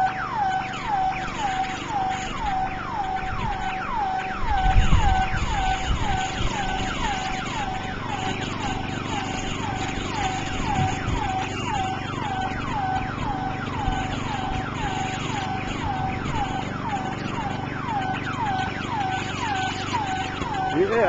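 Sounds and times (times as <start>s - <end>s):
burglar alarm siren wailing: 0.0s - 21.0s
wind noise rumbling: 2.4s - 19.0s.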